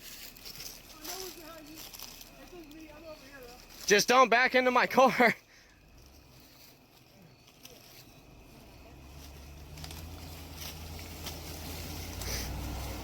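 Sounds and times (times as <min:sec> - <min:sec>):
truck engine running low: 0:05.1 - 0:13.0.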